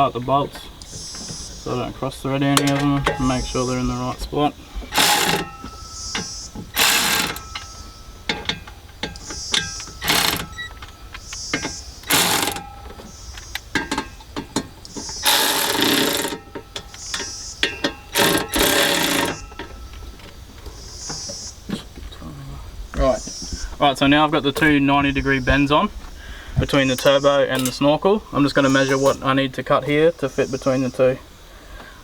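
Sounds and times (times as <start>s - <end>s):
ratchet wrench bursts: 4.8s - 19.9s, 28.5s - 29.3s
light ratchet clicks: 4.9s - 20.3s.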